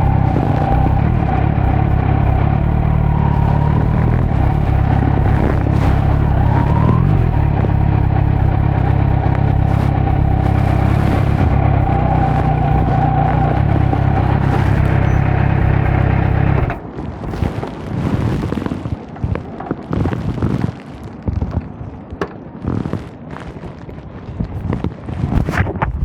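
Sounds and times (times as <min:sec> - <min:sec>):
motorcycle engine running: 0:00.0 - 0:17.4
exhaust crackling pops: 0:00.0 - 0:26.0.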